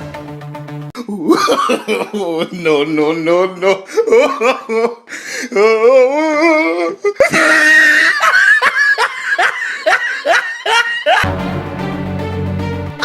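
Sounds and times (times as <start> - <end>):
person laughing in bursts: 1.2 - 2.5, 7.0 - 11.3.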